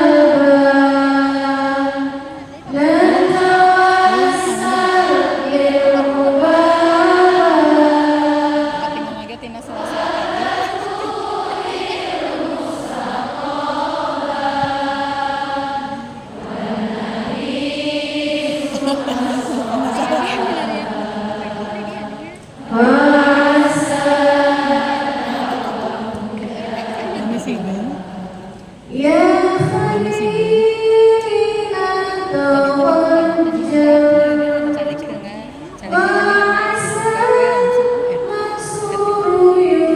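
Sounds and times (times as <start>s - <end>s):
voices chanting in held notes: 0.0s - 31.1s.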